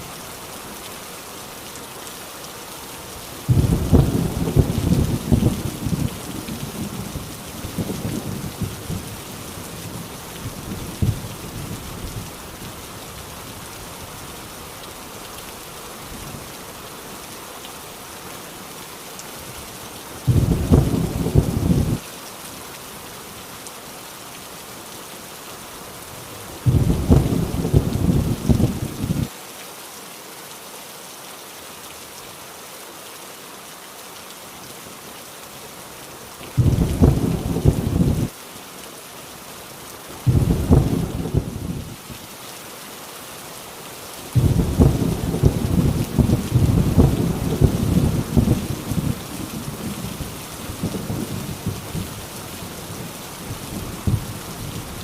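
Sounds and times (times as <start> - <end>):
heavy rain falling: 0.0 - 55.0
thunder rumbling: 3.5 - 9.2, 20.3 - 22.0, 26.6 - 29.3, 36.6 - 38.3, 40.3 - 42.0, 44.4 - 52.2, 52.9 - 55.0.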